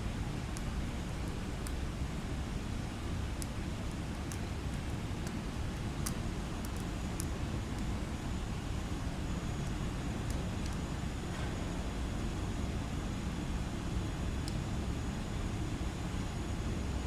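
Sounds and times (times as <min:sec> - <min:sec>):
faint high ticks: 0:06.0 - 0:07.9.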